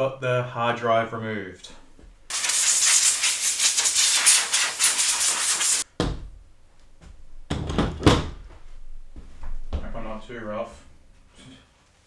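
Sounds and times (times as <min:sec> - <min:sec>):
loud spray of air hissing: 0:02.3 - 0:05.9
knocks and thumps of parts: 0:05.9 - 0:06.4, 0:07.0 - 0:08.5.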